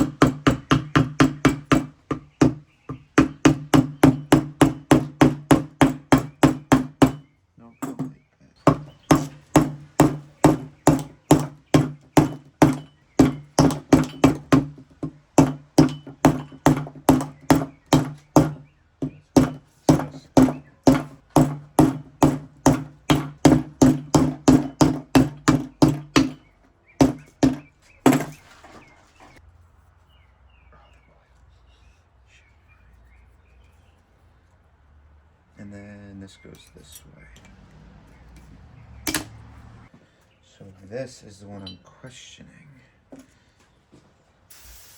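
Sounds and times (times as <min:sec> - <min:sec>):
rubber mallet knocking on metal: 0:00.0 - 0:28.4.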